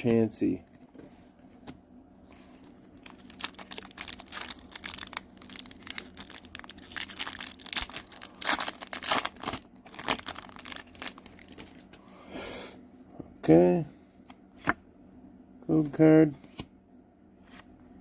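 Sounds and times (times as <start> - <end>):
foil wrapper crinkling and tearing: 2.9 - 12.0.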